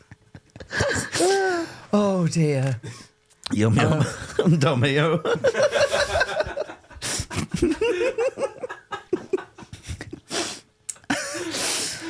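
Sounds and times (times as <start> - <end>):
men laughing: 0.0 - 1.8, 3.6 - 10.4, 11.1 - 12.0.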